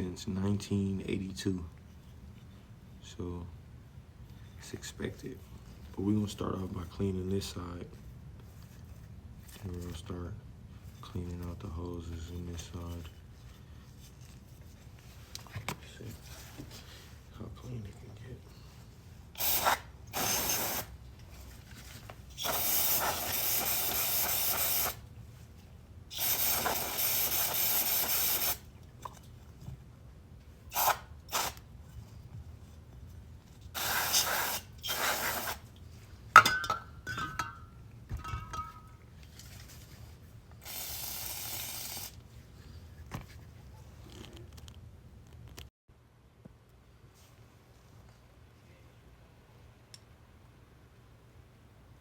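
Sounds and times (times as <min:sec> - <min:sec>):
aerosol cleaner hissing: 0:19.4 - 0:21.0, 0:22.3 - 0:25.0, 0:26.1 - 0:28.7, 0:30.7 - 0:31.6, 0:33.8 - 0:35.6, 0:40.6 - 0:42.2.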